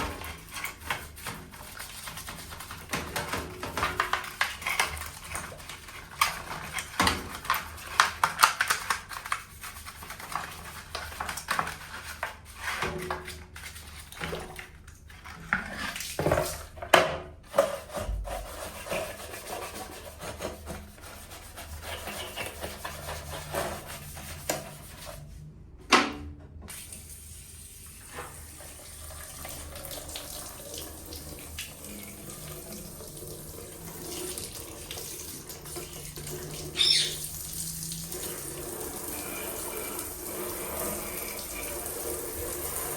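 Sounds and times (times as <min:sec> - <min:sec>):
tap water running into sink: 0:26.7 - 0:42.9.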